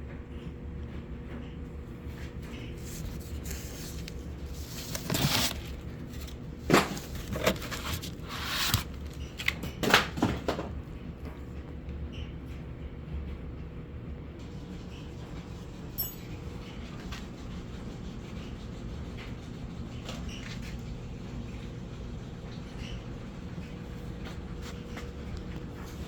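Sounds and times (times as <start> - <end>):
unboxing scrapes and knocks: 2.8 - 9.6.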